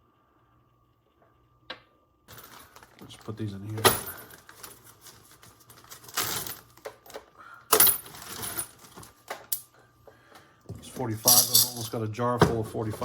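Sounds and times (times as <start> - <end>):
brass cases clinking into jar: 11.2 - 12.0.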